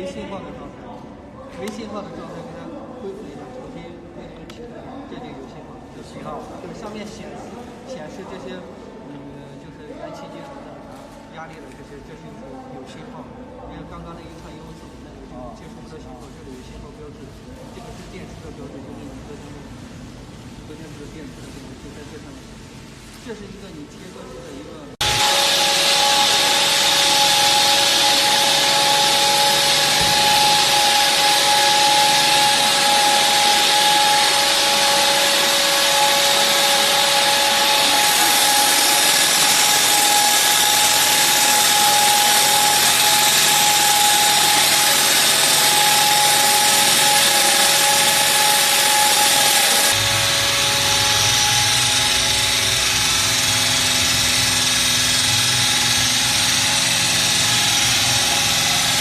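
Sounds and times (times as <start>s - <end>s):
wall saw cutting concrete: 25.0s - 59.0s.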